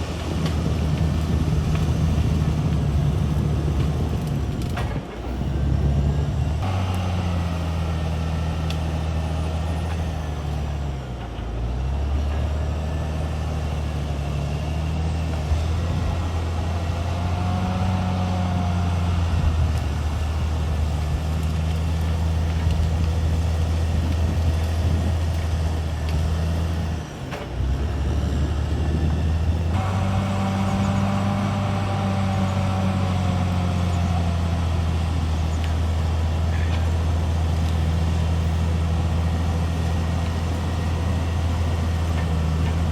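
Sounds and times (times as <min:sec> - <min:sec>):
bulldozer diesel engine running: 0:00.0 - 0:42.9.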